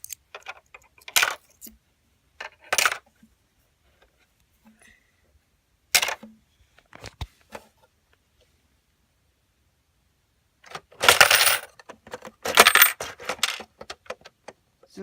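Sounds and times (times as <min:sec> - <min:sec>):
coins clinking: 0:11.0 - 0:11.7, 0:12.5 - 0:13.6
coins rattling through mechanism: 0:11.0 - 0:11.7, 0:12.4 - 0:13.6.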